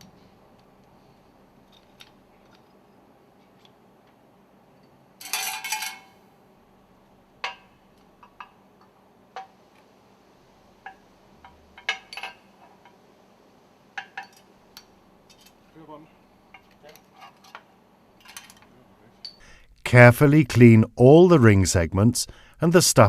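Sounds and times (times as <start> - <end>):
metal rings clinking: 4.8 - 6.2.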